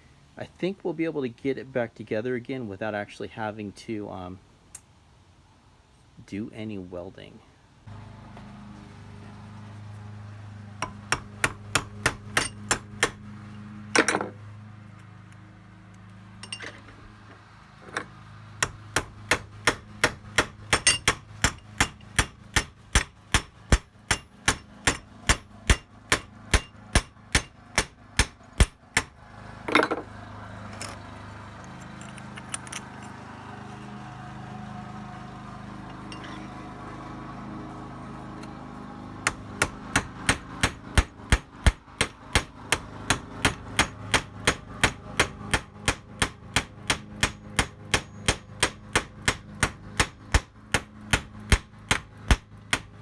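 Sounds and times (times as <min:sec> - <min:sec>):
hammer striking steel: 0:10.8 - 0:13.2, 0:18.6 - 0:30.0, 0:39.2 - 0:53.0.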